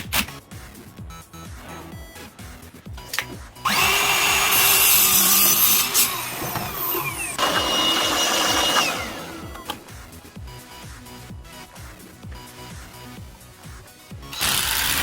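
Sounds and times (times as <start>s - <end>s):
power tool whining: 3.1s - 10.0s, 14.3s - 15.0s.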